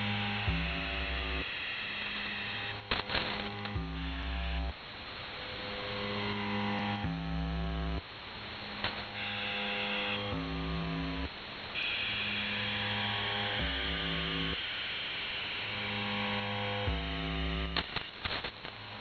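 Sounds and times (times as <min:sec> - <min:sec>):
low buzzing hum: 0:00.0 - 0:11.5, 0:15.4 - 0:19.0
radio white noise hiss: 0:00.0 - 0:19.0.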